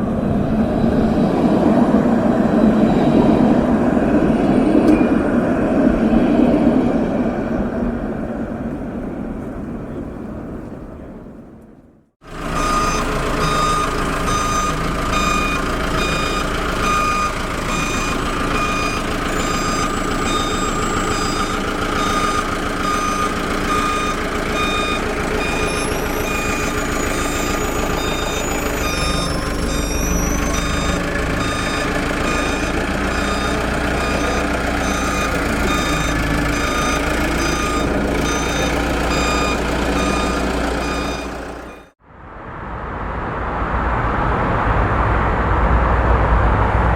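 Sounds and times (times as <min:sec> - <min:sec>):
truck reversing alarm beeping: 0:00.0 - 0:07.2, 0:12.3 - 0:42.0
engine rumble: 0:00.0 - 0:46.9.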